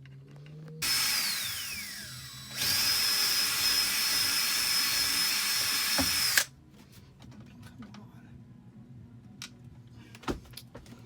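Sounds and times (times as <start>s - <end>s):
power tool motor whining: 0.8s - 6.5s.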